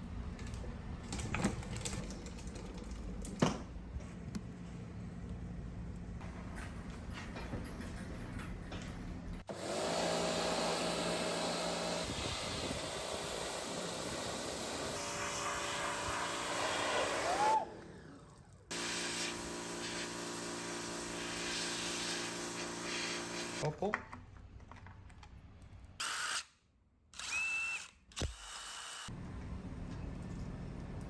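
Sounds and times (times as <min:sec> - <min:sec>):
pressure washer motor humming: 0:09.5 - 0:23.6
hiss of water spray: 0:12.1 - 0:17.6, 0:18.7 - 0:23.6.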